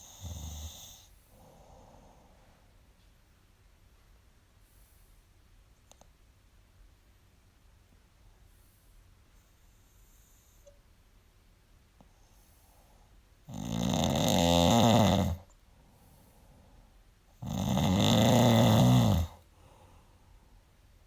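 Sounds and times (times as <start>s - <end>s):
person snoring: 13.5s - 15.5s, 17.4s - 19.4s.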